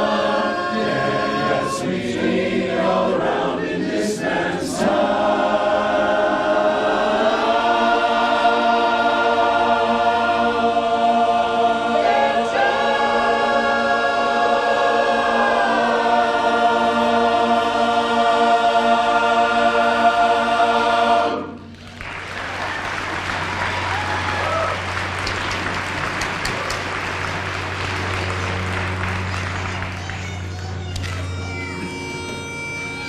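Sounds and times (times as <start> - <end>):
barbershop chorus singing a cappella: 0.0 - 21.7.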